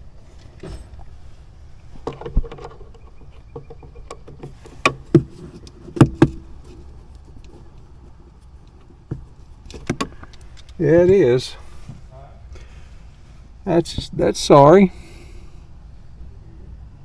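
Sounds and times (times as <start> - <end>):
tools clicking and knocking: 2.0 - 7.6, 8.6 - 11.2.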